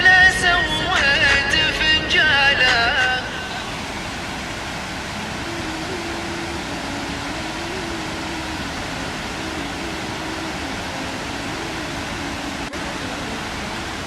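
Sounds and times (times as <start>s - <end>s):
waterfall rushing: 0.0s - 14.0s
faint wavering tune: 5.1s - 13.9s.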